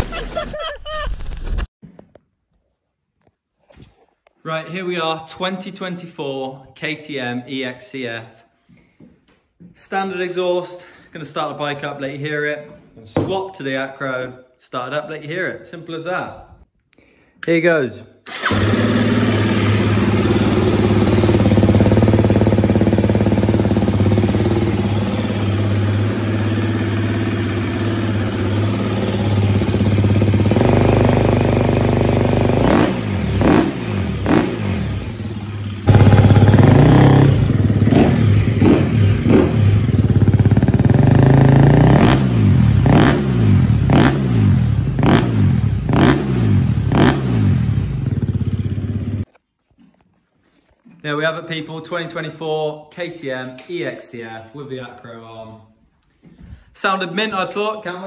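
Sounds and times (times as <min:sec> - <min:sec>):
motorcycle engine idling and revving: 0:18.3 - 0:49.3.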